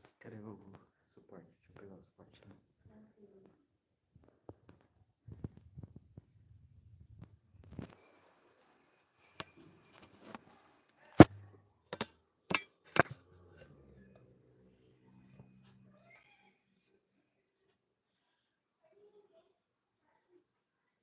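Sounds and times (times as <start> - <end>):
sharp knocks and clicks: 12.0 - 13.2.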